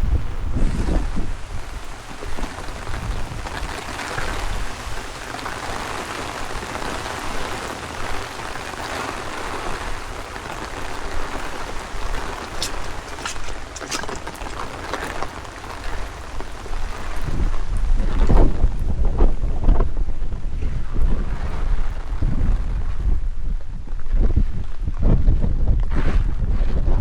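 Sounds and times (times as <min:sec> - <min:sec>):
steady rain falling: 0:00.0 - 0:25.6
wind buffeting microphone: 0:00.0 - 0:27.0.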